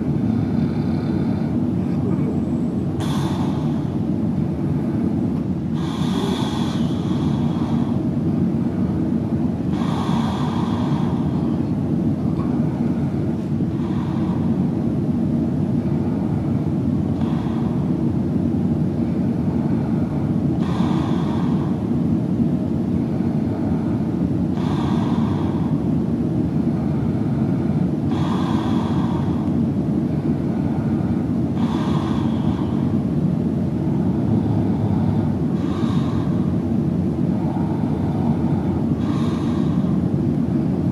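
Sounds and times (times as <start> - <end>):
steady low rumble: 0.0 - 40.9
person snoring softly: 5.7 - 8.2, 9.6 - 14.8, 19.0 - 22.0, 23.0 - 25.9, 26.7 - 29.5, 30.3 - 33.0, 33.8 - 36.6, 37.3 - 40.6.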